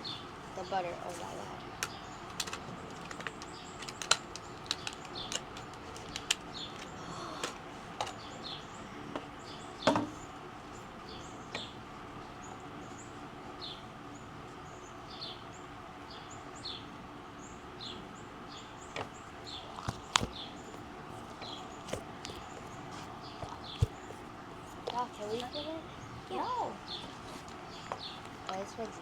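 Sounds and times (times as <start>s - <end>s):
handling clicks: 1.8s - 8.2s, 19.5s - 25.6s
small bird chirping: 14.6s - 29.0s.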